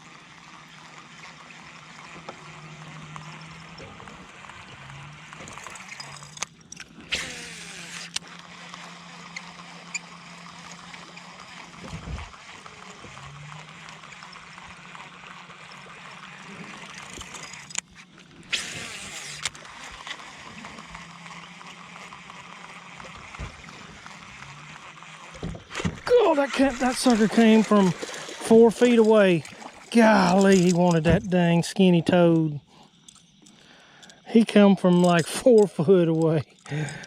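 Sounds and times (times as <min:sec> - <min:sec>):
trolling motor hum: 0:00.0 - 0:37.0
water churning: 0:00.0 - 0:37.0
lure splashing on water: 0:25.7 - 0:31.5.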